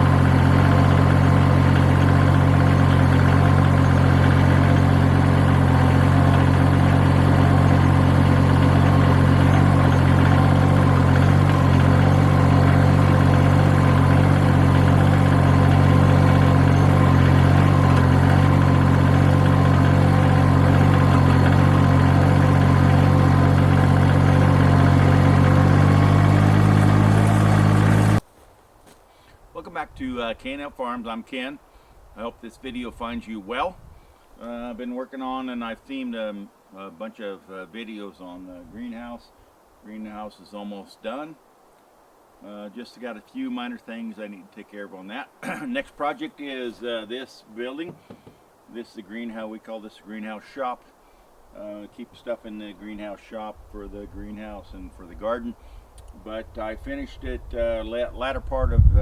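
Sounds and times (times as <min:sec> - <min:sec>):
tractor engine idling: 0:00.0 - 0:28.2, 0:47.8 - 0:48.6.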